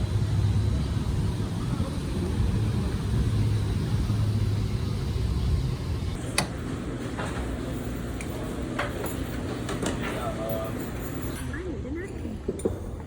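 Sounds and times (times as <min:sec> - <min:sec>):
vehicle rumble: 0:00.0 - 0:06.2.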